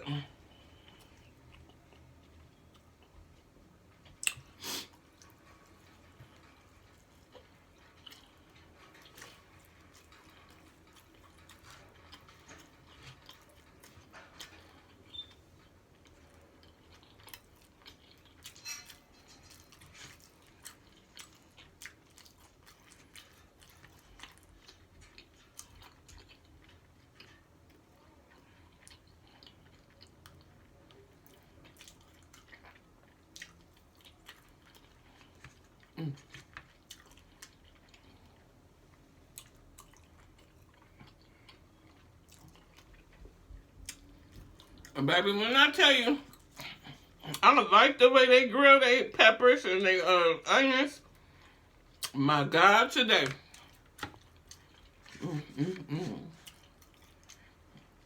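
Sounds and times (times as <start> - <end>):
taco crunching: 0.1 - 48.1, 50.6 - 58.0.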